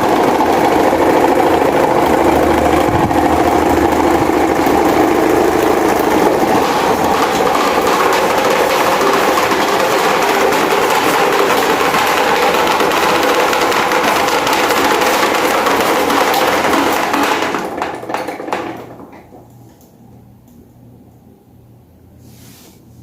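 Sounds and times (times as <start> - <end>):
electric fan rattling: 0.0 - 22.0.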